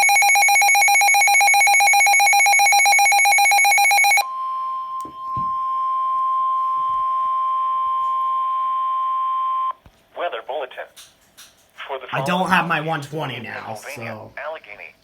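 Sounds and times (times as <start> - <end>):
rapid pulsing alarm beep: 0.0 - 4.2
steady warning tone: 0.0 - 9.7.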